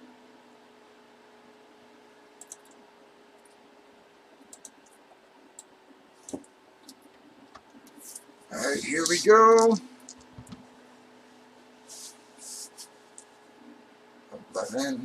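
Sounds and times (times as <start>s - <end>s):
faint steady hum: 0.0s - 15.0s
computer mouse clicks: 2.4s - 2.8s, 4.4s - 5.0s.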